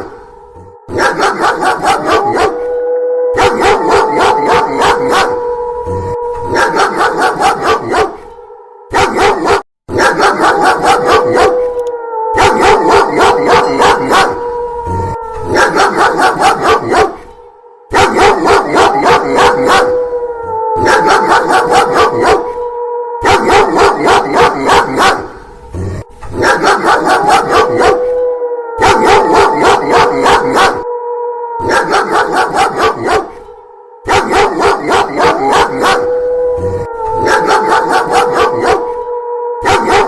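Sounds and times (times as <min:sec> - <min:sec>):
wolf howls: 0:00.0 - 0:40.0
dog barking rapidly: 0:00.9 - 0:02.6, 0:03.4 - 0:05.3, 0:06.5 - 0:08.2, 0:09.0 - 0:11.5, 0:12.4 - 0:14.3, 0:15.5 - 0:17.2, 0:17.9 - 0:19.9, 0:20.8 - 0:22.5, 0:23.2 - 0:25.3, 0:26.3 - 0:28.0, 0:28.8 - 0:30.8, 0:31.6 - 0:33.3, 0:34.1 - 0:36.0, 0:37.2 - 0:38.9, 0:39.6 - 0:40.0.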